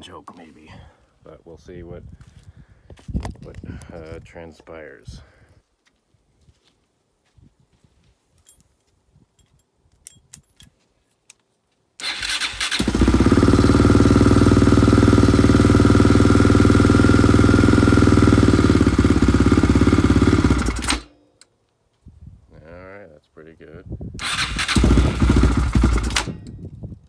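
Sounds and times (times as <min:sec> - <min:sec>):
engine cranking and running: 0:12.0 - 0:21.1, 0:24.2 - 0:26.5.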